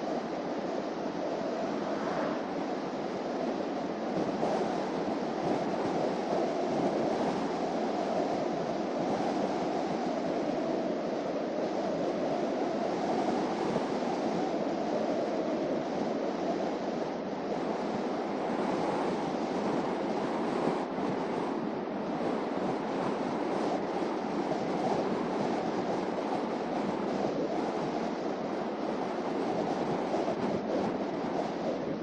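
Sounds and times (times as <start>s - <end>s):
car road and tyre noise: 0.1s - 6.3s.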